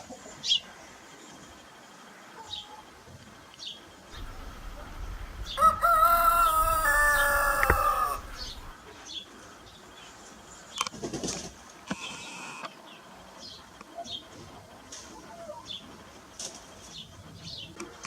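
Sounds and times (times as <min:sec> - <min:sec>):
faint bird chirps: 0:04.1 - 0:08.7
rooster crowing: 0:04.2 - 0:08.7.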